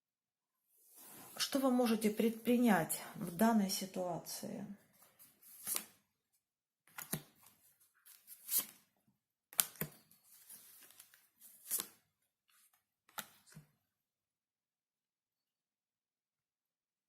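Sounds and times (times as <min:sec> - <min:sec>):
cards swishing and tapping: 0:05.1 - 0:06.0, 0:06.9 - 0:08.9, 0:09.6 - 0:13.7.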